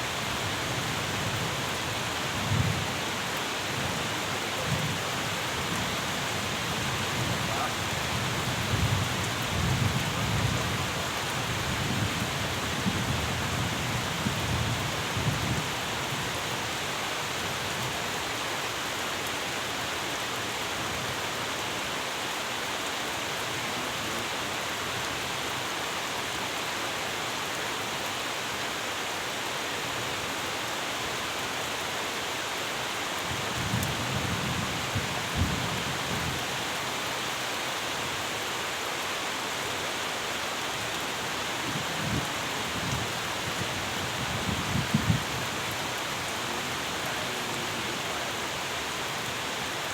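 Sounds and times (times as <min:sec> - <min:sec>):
steady rain falling: 0:00.0 - 0:49.9.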